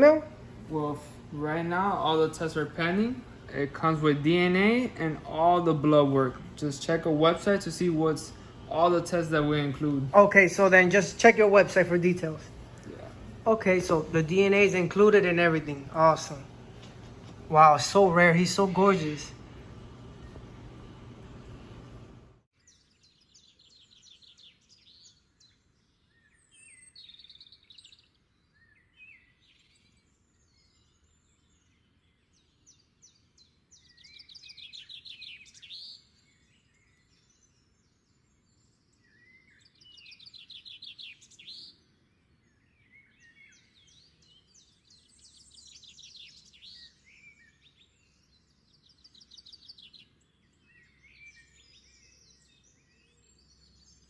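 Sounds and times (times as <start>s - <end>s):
bird chirps and trills: 22.6s - 54.0s.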